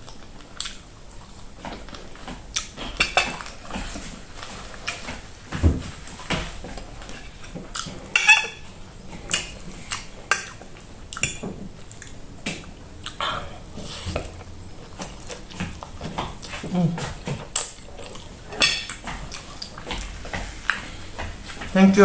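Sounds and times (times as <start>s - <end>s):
wet chewing: 0.0s - 5.3s, 6.0s - 21.8s
cutlery clinking on a plate: 2.8s - 3.5s, 8.1s - 8.6s.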